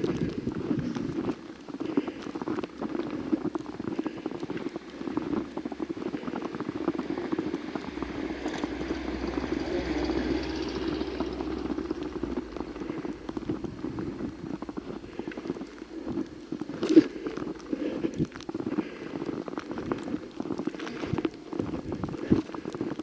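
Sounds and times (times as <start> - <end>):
footsteps crunching in snow: 0.0 - 23.0
rushing noise with low rumble: 3.9 - 18.5.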